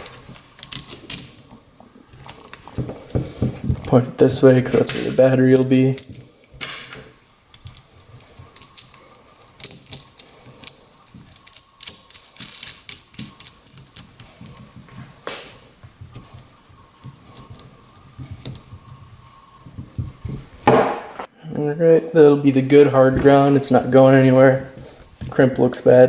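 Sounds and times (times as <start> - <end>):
metallic clicks of bolt and nut: 6.9 - 14.6.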